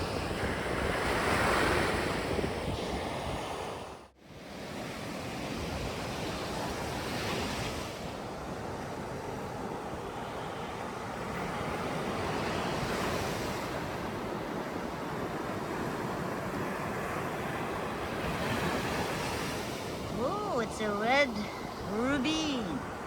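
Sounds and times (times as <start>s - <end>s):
surf breaking on beach: 16.2s - 23.0s.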